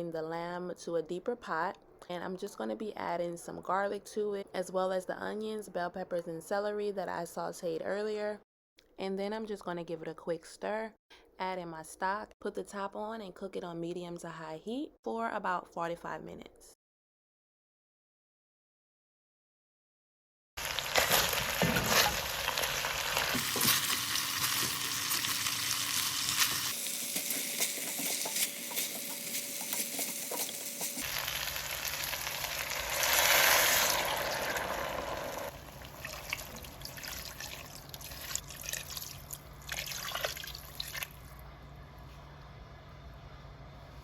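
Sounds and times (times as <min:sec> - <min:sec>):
meat and vegetables sizzling in pot: 0:20.6 - 0:38.2
food being stirred in pot: 0:23.2 - 0:31.2.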